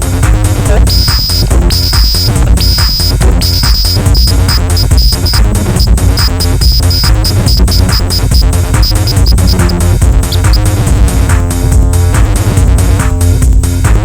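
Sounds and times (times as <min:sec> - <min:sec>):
techno music with driving beat: 0:00.0 - 0:14.0.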